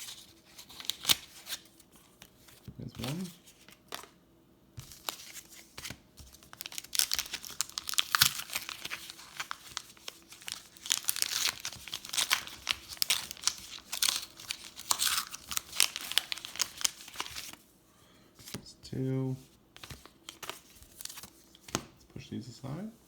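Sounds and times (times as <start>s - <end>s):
foil wrapper crinkling and tearing: 0.0s - 1.7s, 4.9s - 17.6s.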